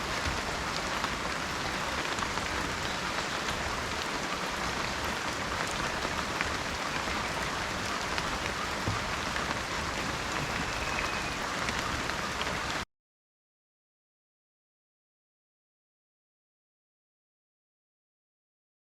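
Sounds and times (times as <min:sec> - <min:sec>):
heavy rain: 0:00.0 - 0:12.9.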